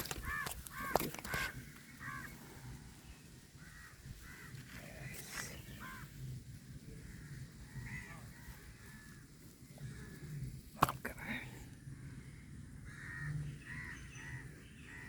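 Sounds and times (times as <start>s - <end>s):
crows cawing: 0.0s - 2.6s, 3.6s - 6.2s, 7.0s - 10.4s, 11.2s - 15.0s.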